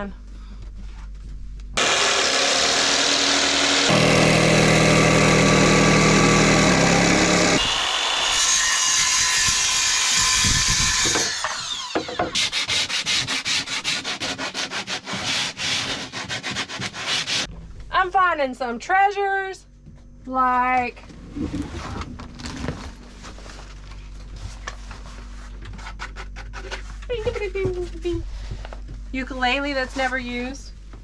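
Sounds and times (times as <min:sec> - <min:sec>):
motor-driven tool running: 0:01.8 - 0:08.6.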